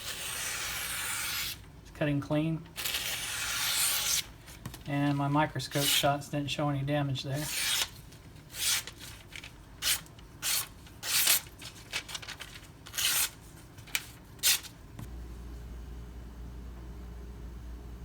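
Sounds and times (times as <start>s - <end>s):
low steady hum: 1.4s - 18.0s
knife slicing through paper: 2.8s - 4.3s, 7.4s - 14.8s.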